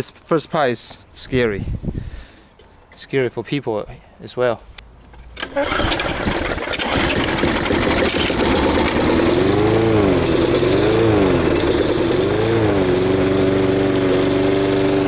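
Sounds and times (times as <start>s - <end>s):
lawn mower engine running: 5.4s - 15.0s.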